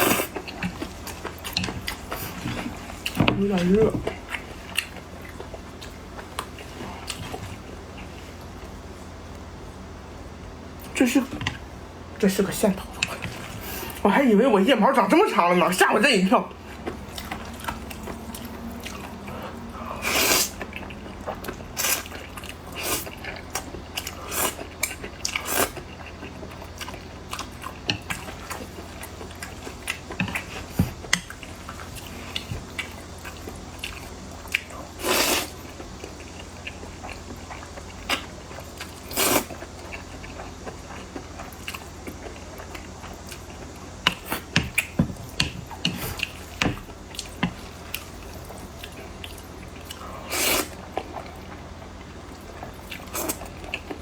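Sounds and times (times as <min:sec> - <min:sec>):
person chewing food: 0:00.0 - 0:09.6, 0:16.5 - 0:54.0.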